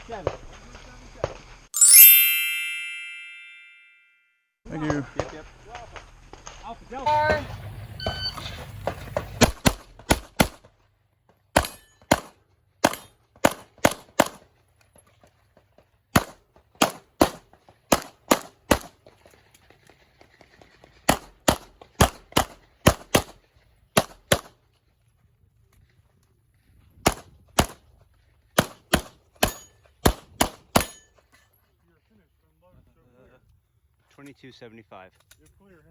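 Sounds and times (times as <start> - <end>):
rapid pistol shots: 9.4 - 10.6, 11.6 - 14.4, 16.2 - 18.9, 21.1 - 23.4, 24.0 - 24.5, 28.6 - 31.0.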